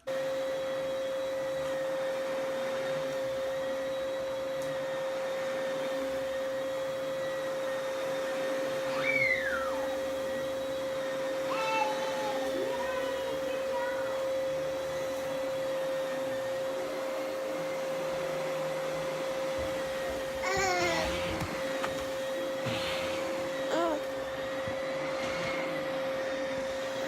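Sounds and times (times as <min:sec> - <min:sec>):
vacuum cleaner running: 0:00.0 - 0:27.0
child babbling: 0:11.5 - 0:14.1, 0:20.4 - 0:21.2, 0:23.7 - 0:24.2.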